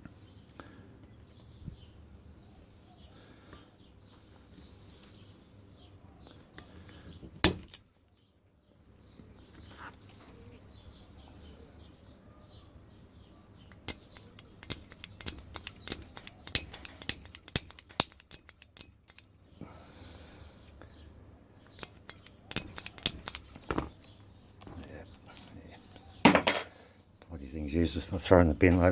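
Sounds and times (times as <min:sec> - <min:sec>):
faint birds chirping: 0:00.0 - 0:28.9
metallic clicks of punch on lock: 0:13.7 - 0:19.3.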